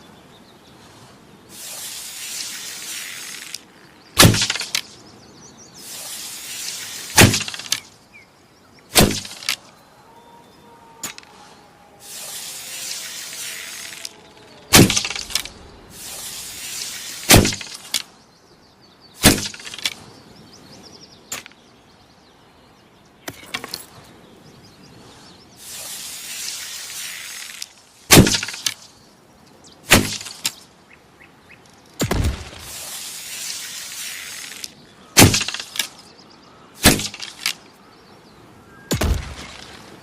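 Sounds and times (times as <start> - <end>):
arrows whooshing in flight: 1.5 - 5.0, 5.8 - 8.0, 8.9 - 9.7, 11.0 - 18.1, 29.9 - 30.6, 32.0 - 36.1
arrows striking: 4.2 - 5.0, 6.7 - 7.9, 8.9 - 9.7, 11.0 - 11.3, 12.3 - 16.2, 17.2 - 18.1, 19.2 - 20.0, 27.4 - 28.9, 29.9 - 30.6, 34.3 - 36.0, 36.8 - 37.6, 38.9 - 40.0.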